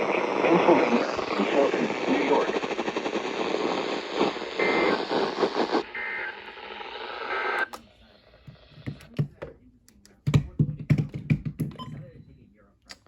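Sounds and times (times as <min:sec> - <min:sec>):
static hiss: 0:00.0 - 0:07.7.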